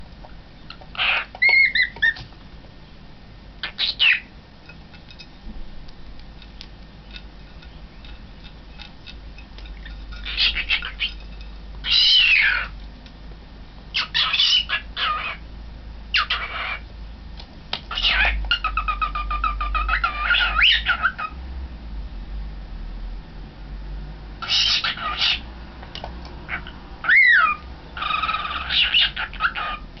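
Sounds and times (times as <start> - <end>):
cockatiel squawks and chirps: 0.9 - 2.2, 3.6 - 4.3, 10.2 - 11.2, 11.8 - 12.7, 14.0 - 15.4, 16.1 - 16.8, 17.9 - 21.3, 24.4 - 25.4, 26.5 - 29.9.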